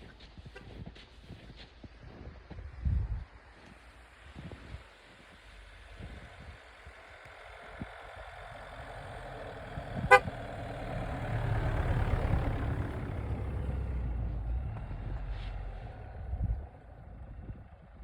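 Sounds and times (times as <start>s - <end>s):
vehicle engine and road noise: 0.0s - 18.0s
short horn toot: 10.1s - 10.3s.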